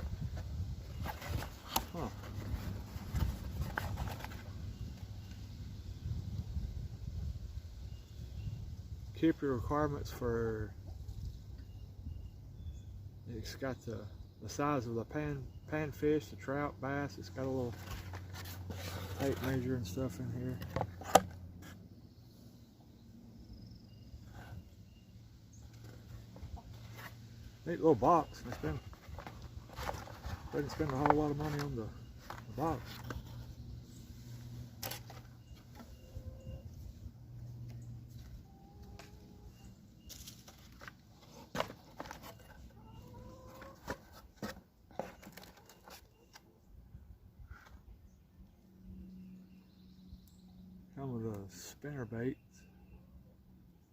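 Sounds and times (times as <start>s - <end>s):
faint animal calls: 35.4s - 37.0s, 42.2s - 44.1s.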